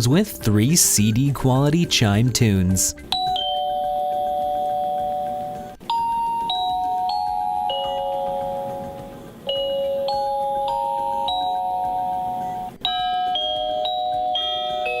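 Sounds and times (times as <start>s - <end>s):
door chime ringing: 3.2s - 15.0s.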